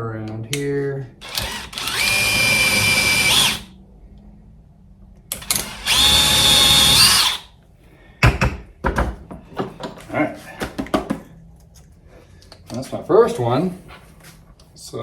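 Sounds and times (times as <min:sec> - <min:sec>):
cordless drill running: 0:01.2 - 0:03.7, 0:05.4 - 0:07.5.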